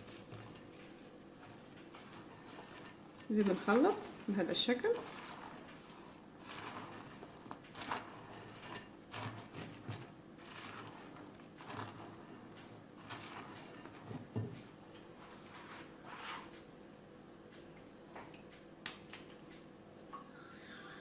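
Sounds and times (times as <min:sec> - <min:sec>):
utensil scraping in a bowl: 0:01.4 - 0:16.6.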